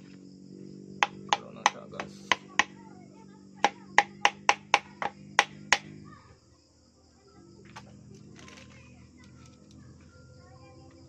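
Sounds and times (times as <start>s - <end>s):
steady low hum: 0.0s - 6.4s.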